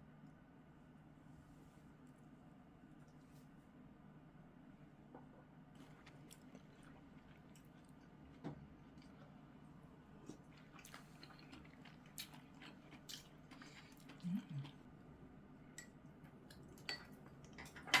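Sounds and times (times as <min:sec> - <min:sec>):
person chewing food: 0:05.8 - 0:15.0.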